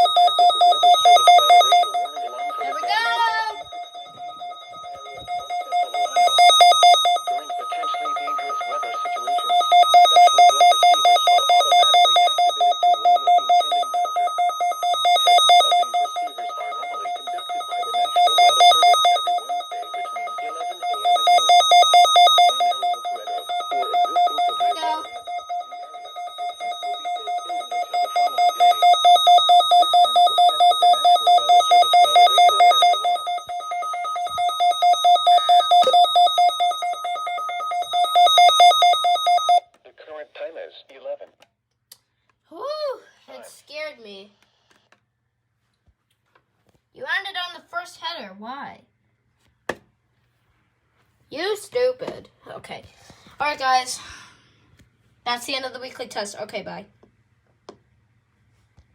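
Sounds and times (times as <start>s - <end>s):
rapidly pulsing alarm tone: 0.0s - 39.6s.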